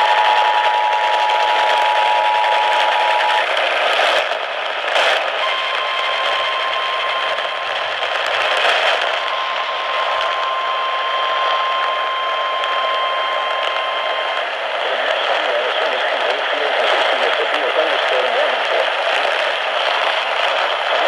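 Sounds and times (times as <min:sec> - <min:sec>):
emergency alert tone: 0:00.0 - 0:04.2, 0:05.0 - 0:21.0
radio hiss: 0:07.8 - 0:21.0.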